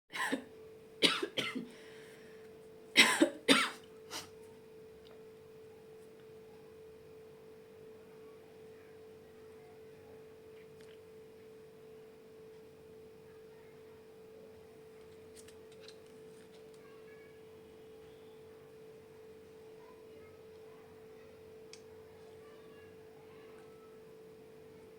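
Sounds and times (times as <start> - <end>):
woman coughing: 0.1 - 1.7, 3.0 - 4.3
faint steady hum: 0.1 - 24.9.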